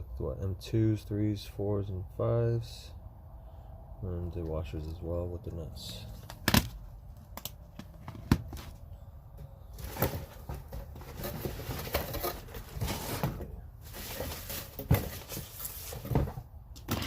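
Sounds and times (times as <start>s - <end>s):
rustling bags and small knocks: 6.1s - 17.0s.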